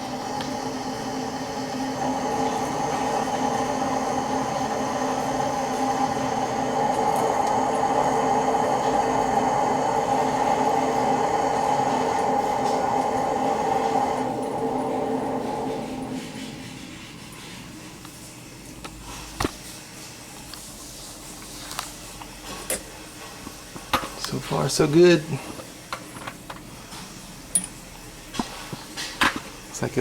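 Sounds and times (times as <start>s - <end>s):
water rushing through pipes: 0.0s - 19.4s.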